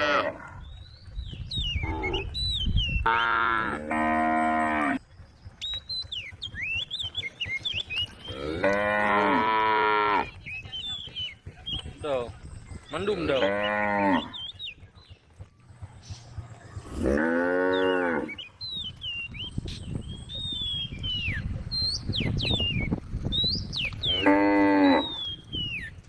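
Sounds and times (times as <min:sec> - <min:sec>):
cow mooing: 0:00.0 - 0:00.6, 0:03.0 - 0:05.0, 0:08.3 - 0:10.3, 0:13.2 - 0:14.4, 0:16.9 - 0:18.4, 0:24.1 - 0:25.2.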